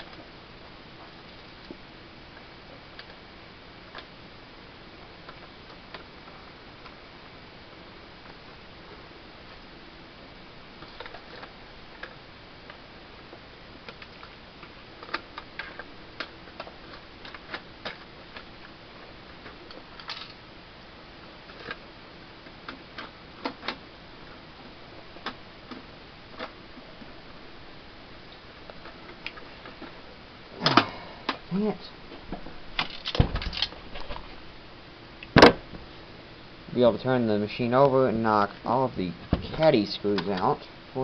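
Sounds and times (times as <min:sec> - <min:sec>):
steady low hiss: 0:00.0 - 0:41.0.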